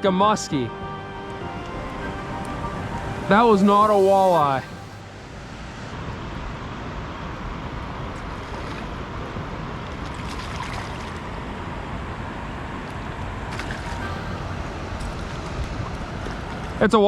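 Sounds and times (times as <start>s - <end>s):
flowing river water: 0.7s - 17.0s.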